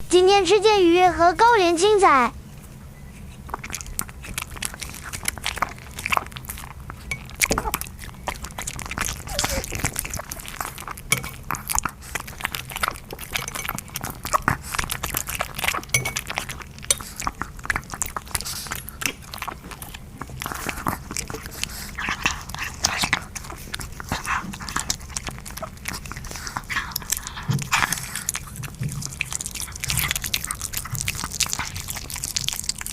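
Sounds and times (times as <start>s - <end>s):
puppy chewing and crunching: 0.4s - 32.9s.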